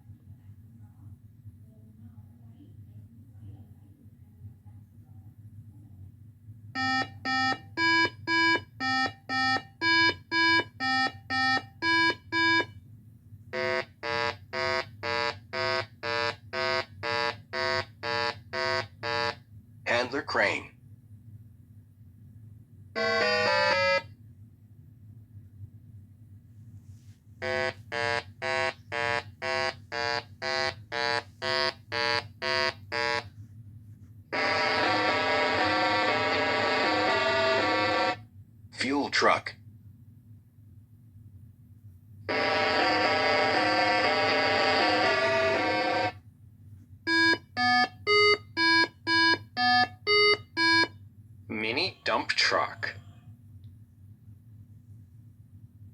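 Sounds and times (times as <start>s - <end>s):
faint low hum: 0.0s - 55.9s
reversing alarm beeping: 6.8s - 12.7s, 13.6s - 19.4s, 23.0s - 24.1s, 34.4s - 38.2s, 42.3s - 46.2s, 47.1s - 50.9s
continuous sound with shifting pitch: 34.4s - 38.2s, 42.3s - 46.2s.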